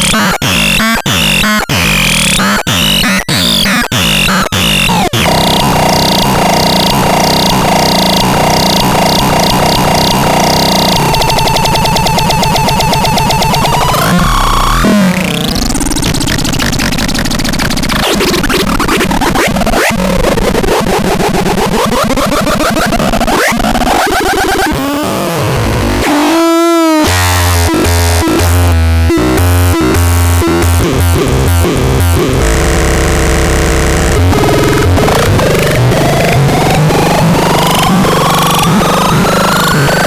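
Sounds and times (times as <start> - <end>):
pulsing low bass rhythm: 0.0 - 14.1, 27.2 - 38.7
buzzing synthesizer tones: 0.0 - 20.7, 21.4 - 40.0.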